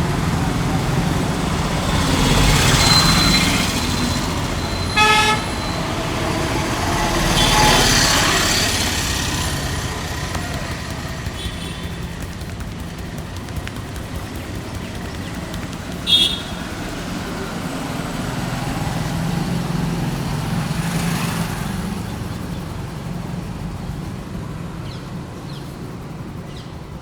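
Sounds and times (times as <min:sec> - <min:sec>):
road traffic passing: 0:00.0 - 0:25.8
vehicle horn toot: 0:04.7 - 0:05.9, 0:16.0 - 0:16.6.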